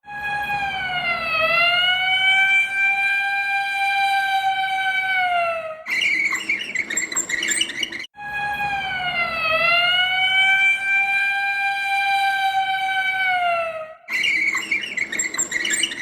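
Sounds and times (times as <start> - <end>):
emergency vehicle siren wailing: 0.0 - 7.2, 8.1 - 16.0
chirping sounds: 5.9 - 8.1, 14.1 - 16.0.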